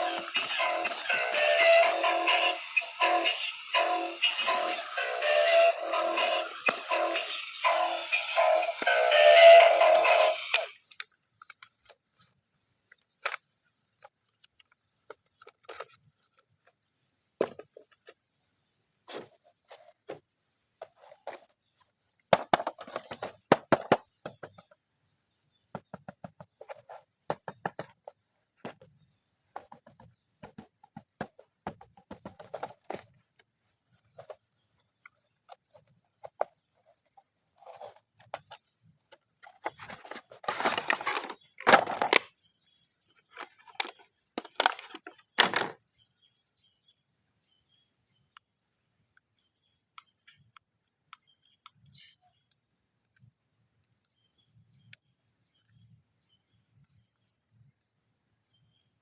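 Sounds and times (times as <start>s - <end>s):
plastic toys clicking and rustling: 0.0s - 11.9s, 39.4s - 42.3s, 43.3s - 45.8s.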